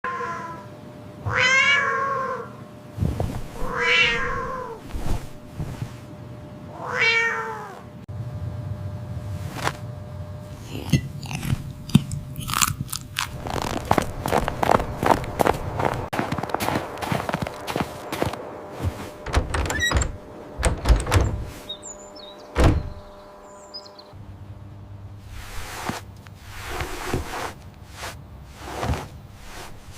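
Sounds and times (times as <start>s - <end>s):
cat meowing: 0.0s - 0.7s, 1.3s - 2.6s, 3.6s - 4.8s, 6.8s - 7.8s
quick clicks and crunching: 11.3s - 17.7s.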